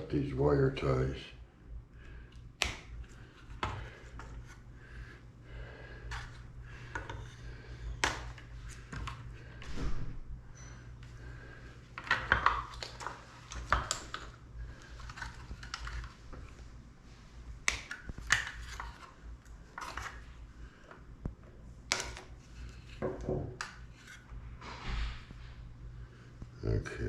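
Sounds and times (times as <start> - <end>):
plastic parts clicking and rustling: 12.0 - 16.6.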